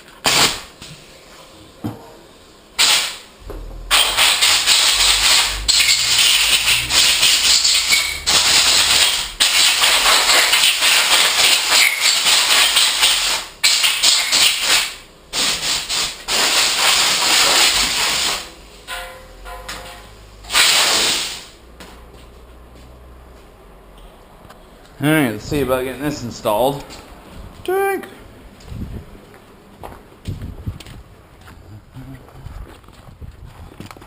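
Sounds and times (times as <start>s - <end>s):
pressurised spray hissing: 2.8s - 18.6s, 20.2s - 21.6s.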